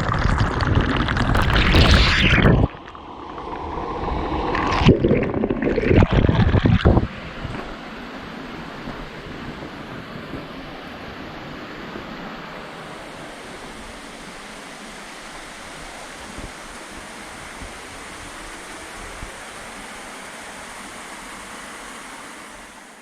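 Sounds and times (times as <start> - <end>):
waterfall rushing: 1.2 - 2.8, 7.0 - 23.0.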